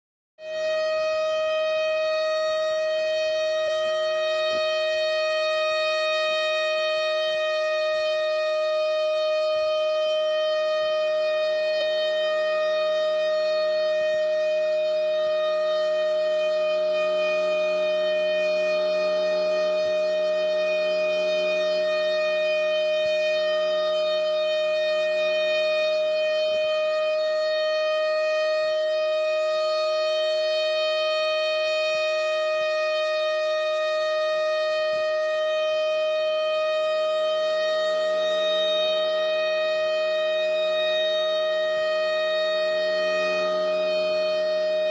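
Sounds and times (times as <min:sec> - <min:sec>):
siren steady tone: 0:00.4 - 0:44.9.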